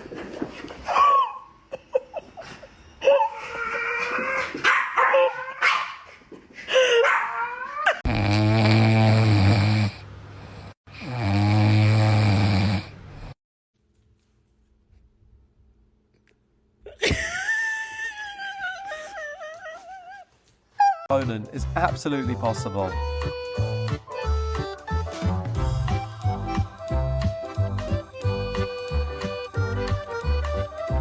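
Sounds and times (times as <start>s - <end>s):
dog barking and yipping: 4.4s - 6.2s, 6.9s - 8.0s.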